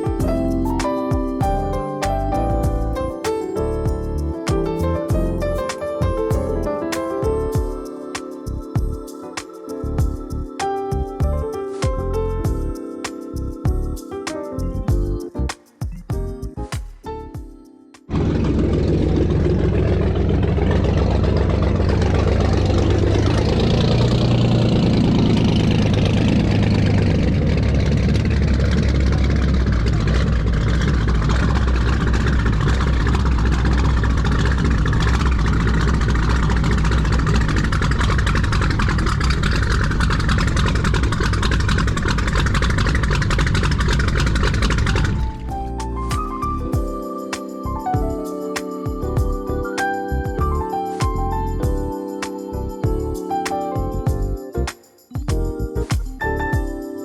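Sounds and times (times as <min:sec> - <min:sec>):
boat engine rumbling: 0:18.1 - 0:46.7.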